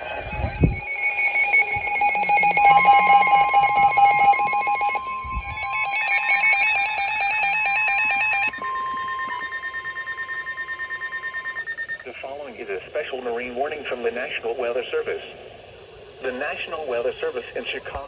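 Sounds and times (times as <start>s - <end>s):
rapidly pulsing alert beeps: 0.0s - 12.2s
steady warning alarm tone: 0.0s - 14.6s.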